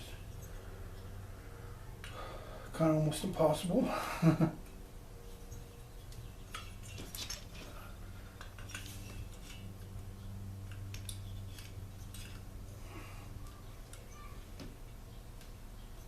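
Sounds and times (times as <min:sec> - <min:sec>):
steady low hum: 0:00.0 - 0:16.0
metallic clinks of engine parts: 0:04.6 - 0:14.2.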